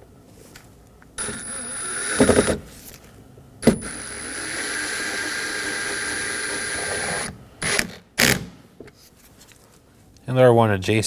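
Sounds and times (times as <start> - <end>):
power screwdriver whining: 1.2 - 2.7, 3.6 - 8.4.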